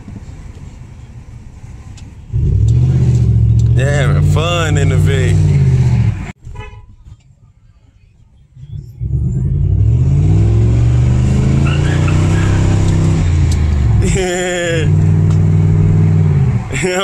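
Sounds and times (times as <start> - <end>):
car engine revving: 1.7 - 6.4, 8.6 - 17.0.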